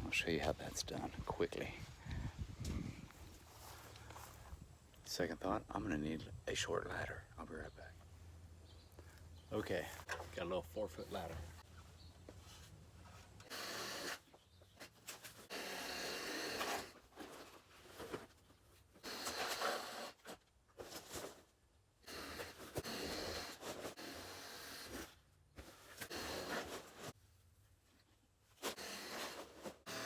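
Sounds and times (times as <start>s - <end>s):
cordless saw cutting fronds: 13.4s - 17.0s, 19.0s - 20.4s, 22.0s - 25.1s, 26.0s - 27.2s, 28.6s - 30.0s.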